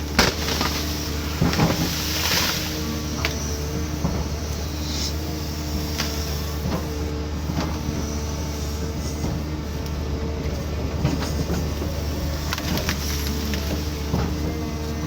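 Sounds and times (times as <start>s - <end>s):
sharp knocks and cracks: 0.0s - 4.2s
excavator diesel engine running: 0.0s - 15.0s
hydraulic whine: 0.0s - 15.0s.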